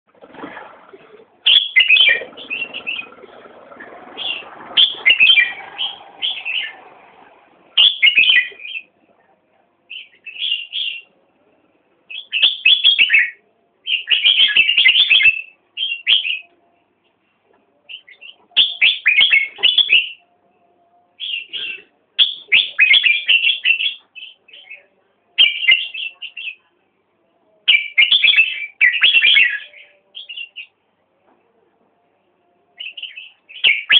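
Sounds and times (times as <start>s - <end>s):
bird chirping rapidly: 1.4s - 3.4s, 4.1s - 6.9s, 7.8s - 8.9s, 17.9s - 20.2s, 32.8s - 33.9s.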